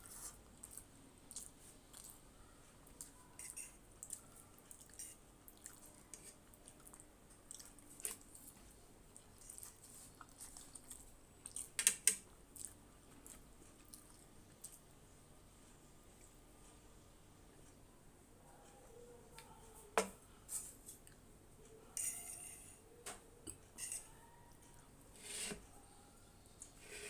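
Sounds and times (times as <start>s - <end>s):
wet chewing: 0.6s - 2.2s, 4.0s - 11.8s.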